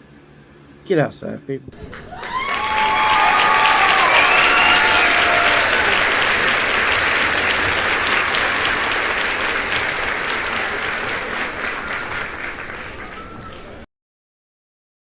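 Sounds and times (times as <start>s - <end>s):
crowd applauding: 1.8s - 13.9s
whistles: 1.8s - 13.9s.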